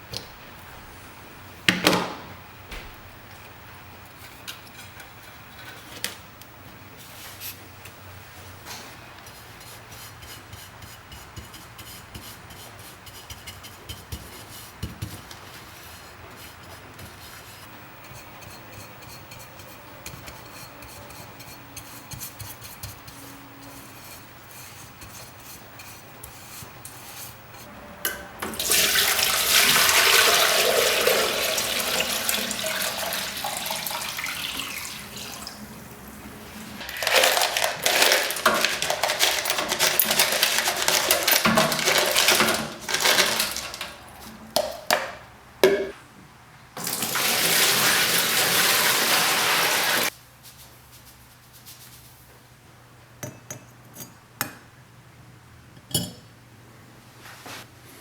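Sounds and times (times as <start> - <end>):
water rushing from a tap: 28.5 - 35.7, 46.8 - 50.1.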